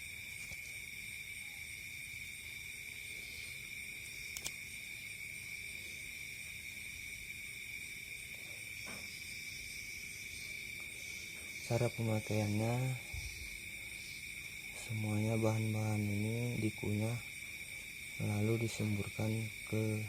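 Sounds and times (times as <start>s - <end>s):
insects chirring: 0.0s - 20.0s
sharp click: 4.3s - 4.6s.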